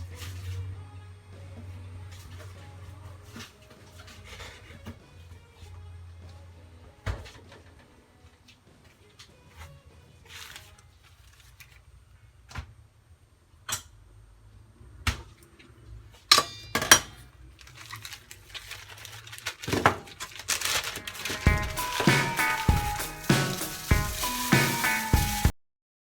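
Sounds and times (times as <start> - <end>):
rustling and scraping: 2.1 - 5.2, 7.3 - 11.9, 17.6 - 25.5
dishes clinking: 16.3 - 17.2.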